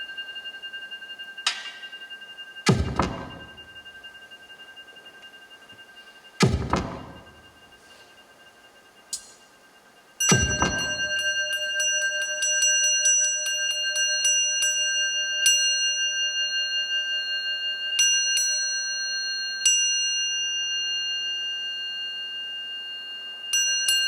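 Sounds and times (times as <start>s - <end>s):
high bell-like tone: 0.0s - 24.0s
struck electronic pings: 1.4s - 4.1s, 6.4s - 7.8s, 10.3s - 11.6s.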